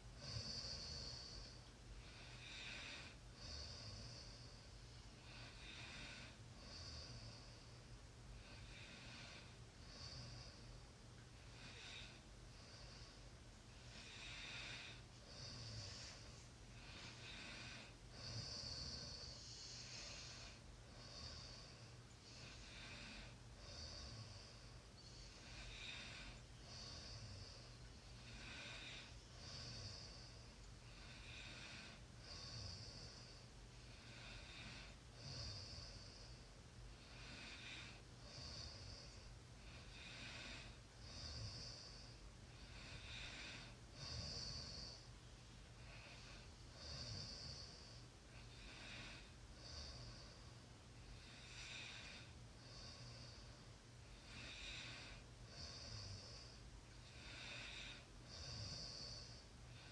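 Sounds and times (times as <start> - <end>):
person snoring: 13.9 - 33.4, 37.0 - 45.0, 45.8 - 50.4, 54.2 - 59.9.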